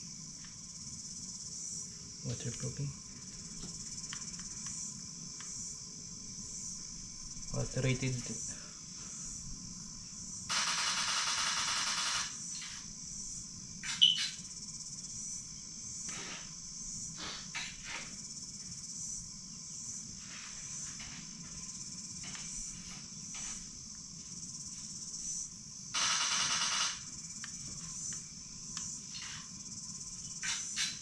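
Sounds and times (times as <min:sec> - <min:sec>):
crickets chirring: 0:00.0 - 0:31.0
loud hiss: 0:17.1 - 0:18.0.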